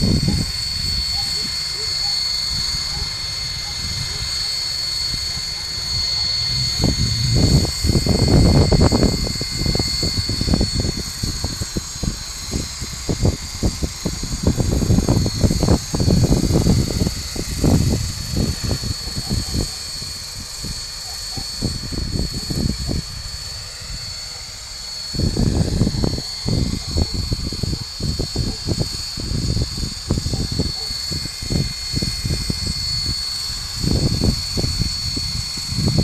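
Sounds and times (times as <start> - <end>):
wind buffeting microphone: 0.0 - 1.7, 2.3 - 36.0
model helicopter high whine: 0.0 - 36.0.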